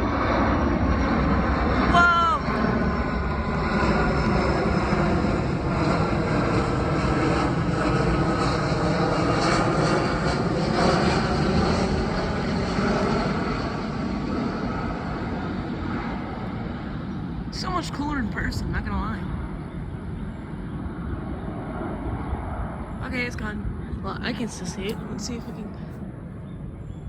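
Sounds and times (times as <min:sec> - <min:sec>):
jet plane roaring overhead: 0:00.0 - 0:27.0.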